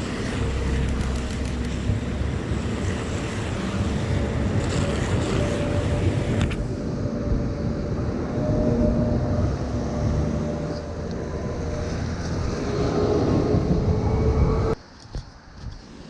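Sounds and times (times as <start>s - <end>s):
rain and wet tyres hissing: 0.0s - 8.3s
traffic rumble: 0.0s - 16.0s.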